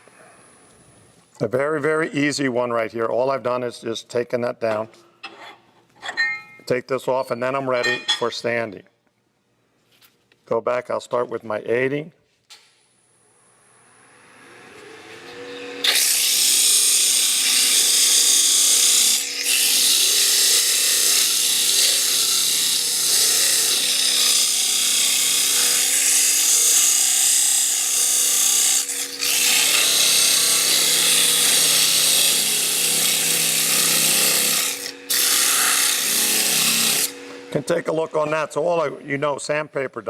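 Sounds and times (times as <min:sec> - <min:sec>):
wood lathe motor humming: 0:14.2 - 0:38.8.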